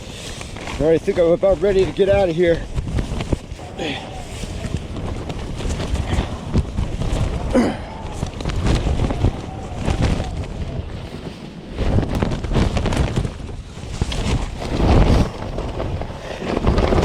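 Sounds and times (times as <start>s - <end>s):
sharp crackles: 0.0s - 17.0s
strong wind buffeting microphone: 0.0s - 17.0s.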